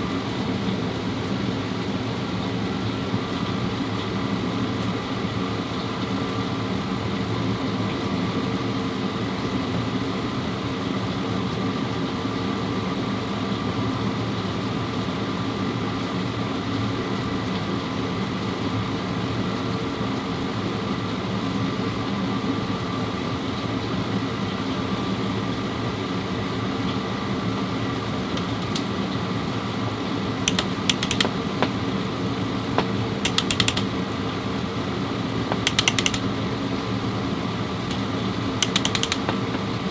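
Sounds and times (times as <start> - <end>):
machine humming: 27.6 - 29.0, 30.2 - 39.9
sharp clicks: 28.3 - 28.9, 30.4 - 31.9, 32.6 - 34.0, 35.4 - 36.4, 37.9 - 39.8.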